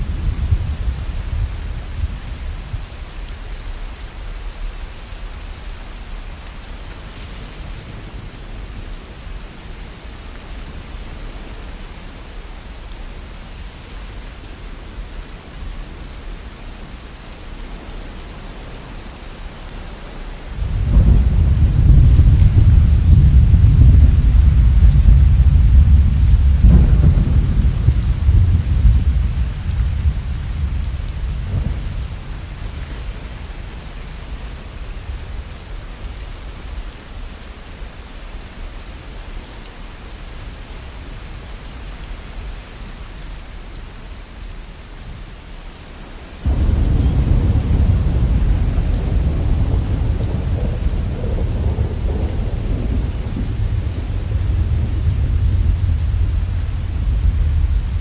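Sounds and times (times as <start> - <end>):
heavy rain: 0.0 - 58.0
deep low rumble: 20.6 - 32.4.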